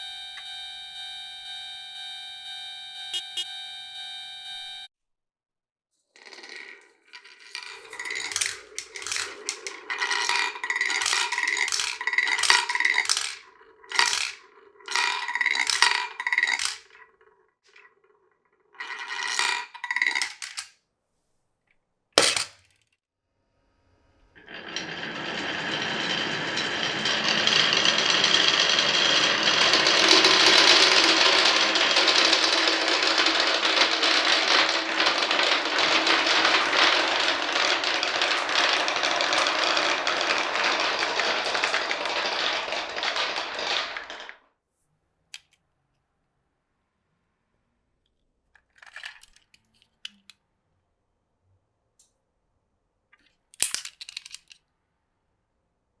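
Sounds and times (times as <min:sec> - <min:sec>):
marbles clattering on wooden track: 0:06.2 - 0:20.7, 0:22.2 - 0:22.8, 0:24.4 - 0:44.4, 0:48.6 - 0:50.2, 0:53.6 - 0:54.6.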